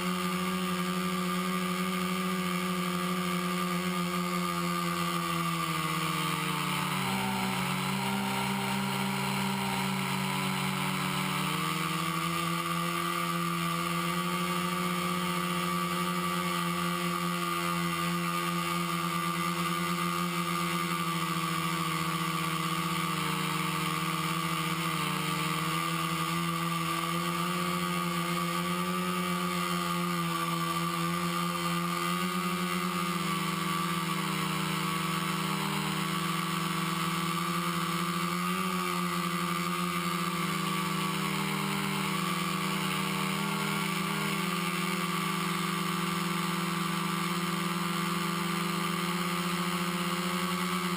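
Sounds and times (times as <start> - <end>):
drone motors droning hum: 0.0 - 50.9.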